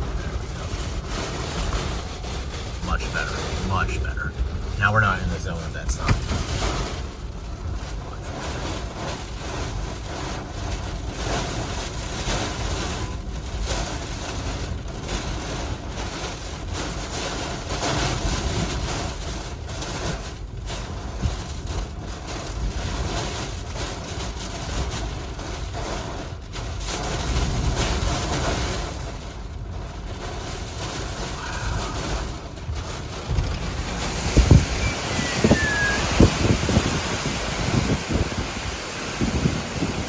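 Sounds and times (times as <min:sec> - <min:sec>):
wind buffeting microphone: 0:30.4 - 0:40.0
strong wind rushing: 0:31.4 - 0:40.0.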